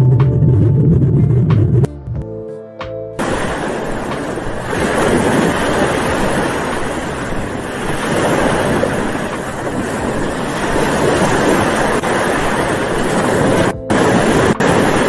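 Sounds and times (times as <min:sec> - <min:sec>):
ocean waves washing: 0:03.2 - 0:15.0.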